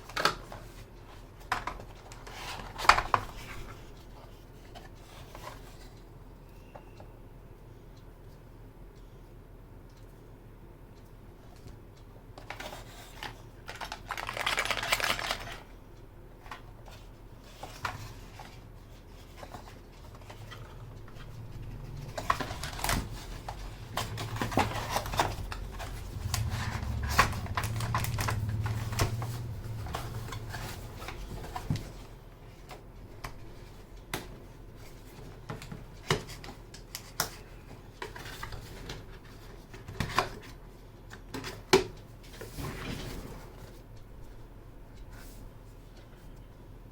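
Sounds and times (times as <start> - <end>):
mechanical keyboard typing: 13.7 - 15.6
low rumble: 26.0 - 30.4.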